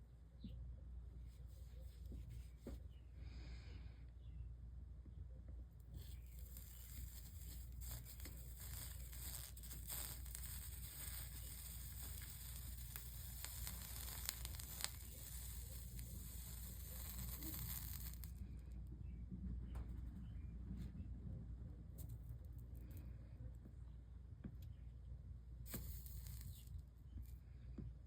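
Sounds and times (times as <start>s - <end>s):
solder flux sizzling and crackling: 5.8s - 19.2s, 25.6s - 27.4s.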